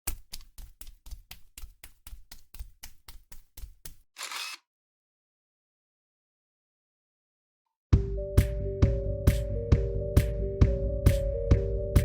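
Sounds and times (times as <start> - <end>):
sharp clicks: 4.2 - 4.6.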